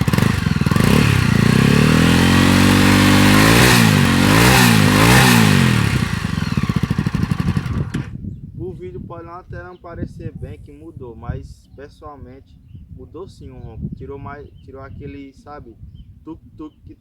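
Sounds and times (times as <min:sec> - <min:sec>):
motorcycle engine revving: 0:00.0 - 0:08.2.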